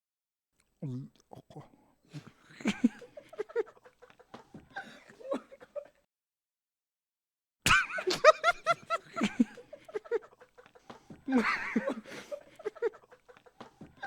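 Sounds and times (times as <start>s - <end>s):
high-pitched laughing: 7.7s - 14.0s.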